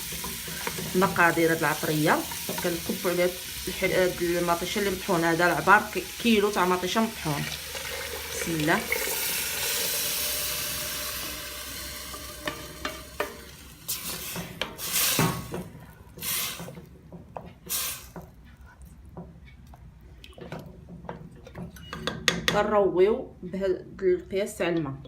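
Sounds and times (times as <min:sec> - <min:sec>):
food sizzling in a pot: 0:00.0 - 0:16.8, 0:17.7 - 0:18.2
spoon stirring and scraping a pot: 0:00.0 - 0:22.7.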